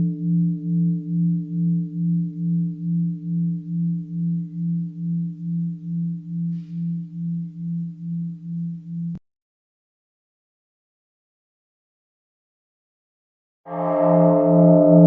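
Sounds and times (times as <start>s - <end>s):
bell ringing with pulsing hum: 0.0s - 9.2s, 13.7s - 15.0s.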